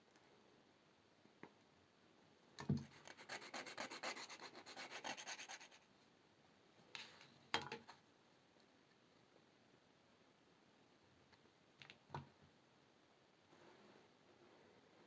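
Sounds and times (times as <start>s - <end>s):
file scraping wire: 2.9s - 5.8s.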